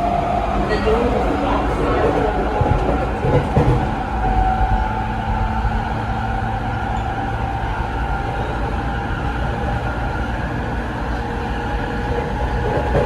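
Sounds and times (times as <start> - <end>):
wheel and rail rumble: 0.0 - 13.0.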